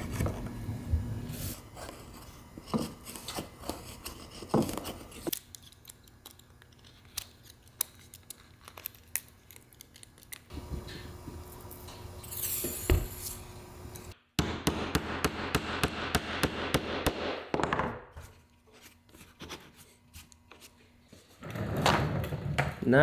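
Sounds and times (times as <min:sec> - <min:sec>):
knife scraping wood: 0:01.5 - 0:05.4, 0:18.3 - 0:20.8.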